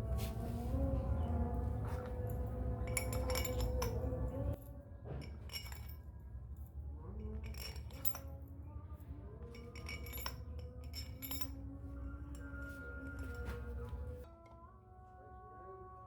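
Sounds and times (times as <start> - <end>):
metallic clinking: 2.0 - 4.6, 5.2 - 8.6, 9.4 - 14.2.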